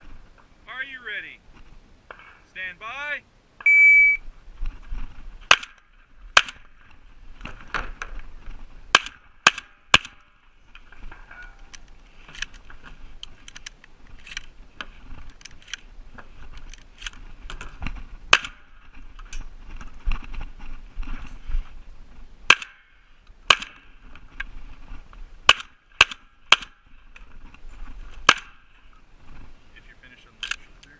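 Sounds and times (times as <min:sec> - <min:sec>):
shotgun shots: 0:05.5 - 0:05.8, 0:08.9 - 0:10.2.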